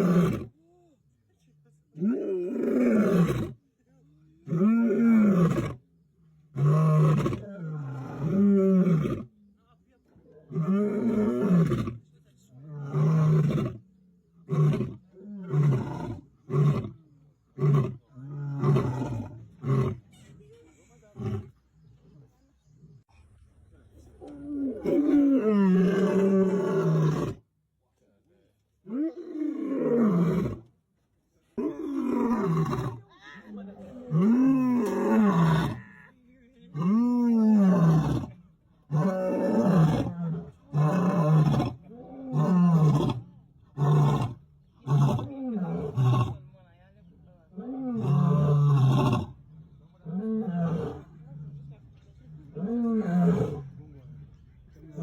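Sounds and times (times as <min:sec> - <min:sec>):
lion roaring: 0:02.0 - 0:03.6, 0:04.4 - 0:05.8, 0:06.5 - 0:09.3, 0:10.5 - 0:12.0, 0:12.6 - 0:13.8, 0:14.4 - 0:17.0, 0:17.6 - 0:20.0, 0:24.2 - 0:27.4, 0:28.9 - 0:30.7, 0:31.6 - 0:33.0, 0:33.8 - 0:35.9, 0:36.7 - 0:46.5, 0:47.5 - 0:55.0.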